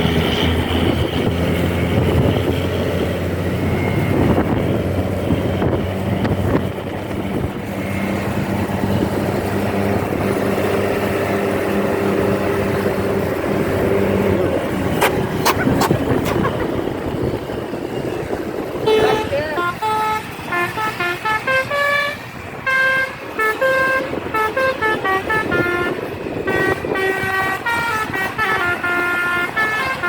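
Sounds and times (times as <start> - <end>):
vehicle engine running: 0.0 - 21.1
road and wind noise: 0.0 - 30.0.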